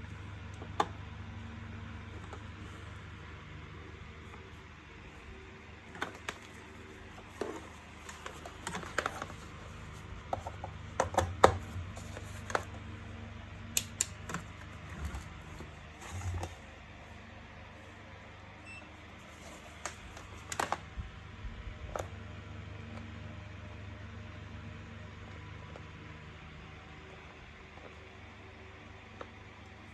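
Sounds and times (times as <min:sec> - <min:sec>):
steady low hum: 0:00.0 - 0:29.9
plastic parts and tools clicking: 0:07.2 - 0:12.8.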